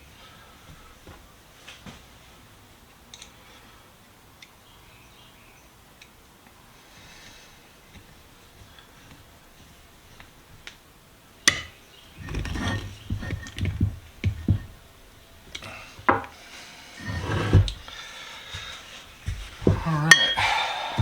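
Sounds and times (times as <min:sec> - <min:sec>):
metal knocks and clunks: 0:11.5 - 0:14.8, 0:19.3 - 0:20.4.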